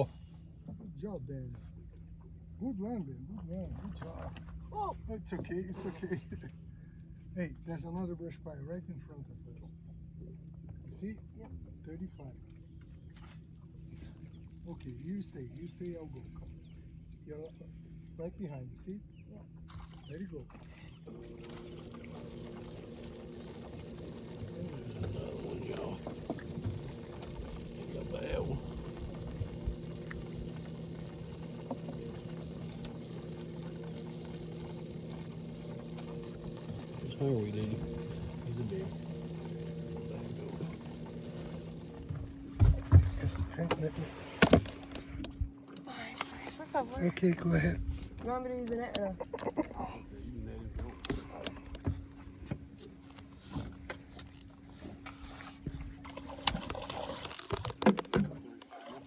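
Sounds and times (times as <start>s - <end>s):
boat motor humming: 0.0s - 59.0s
faint ticks: 28.4s - 37.0s
knocks and rattles of handling: 56.5s - 58.5s.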